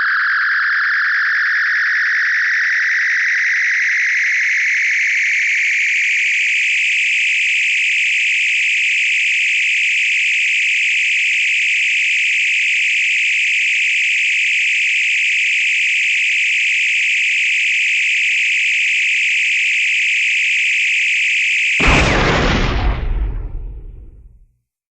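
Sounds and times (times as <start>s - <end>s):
explosion with deep rumble: 21.8s - 24.4s.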